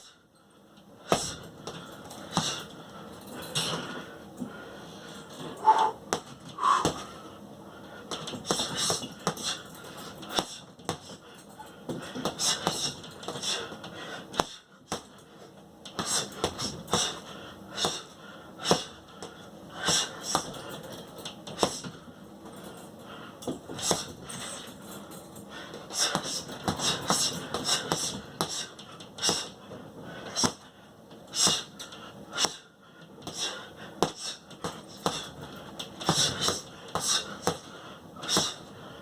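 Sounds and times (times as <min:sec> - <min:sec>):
sharp hissing exhales: 0:31.4 - 0:31.7, 0:38.2 - 0:38.7.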